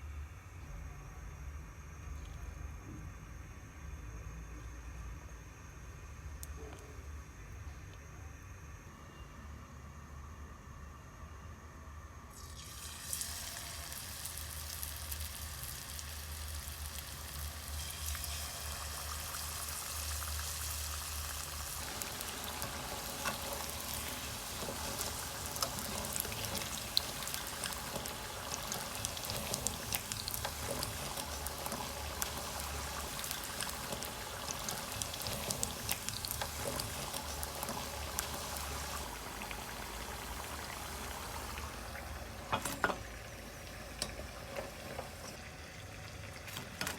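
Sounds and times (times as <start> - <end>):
potatoes frying in hot oil: 12.3 - 46.9.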